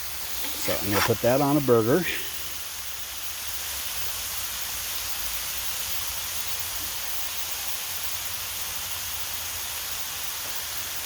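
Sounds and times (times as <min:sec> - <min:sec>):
burgers sizzling on a griddle: 0:00.0 - 0:11.0.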